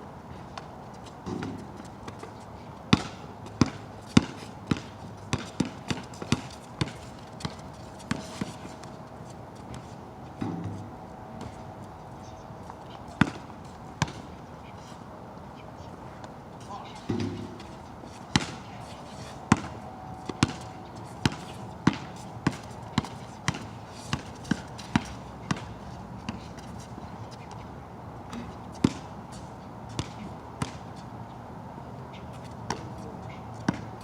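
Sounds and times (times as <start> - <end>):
basketball bouncing on wet court: 2.9 - 8.5, 13.2 - 14.2, 18.3 - 18.6, 19.5 - 25.7, 28.3 - 29.1, 30.0 - 30.8, 33.7 - 33.9.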